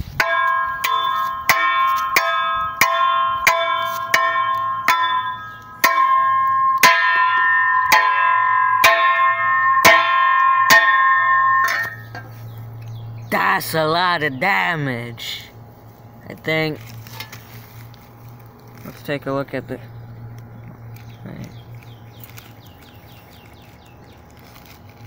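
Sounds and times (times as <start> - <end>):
beat of sharp strikes: 0.0 - 12.9
low hum: 0.0 - 25.0
ringing bell-like tones: 0.2 - 16.2.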